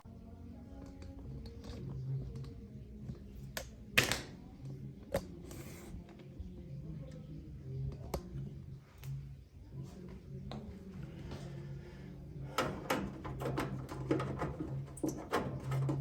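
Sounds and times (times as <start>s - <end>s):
faint low hum: 0.0s - 16.0s
tools clicking and knocking on metal: 12.5s - 16.0s.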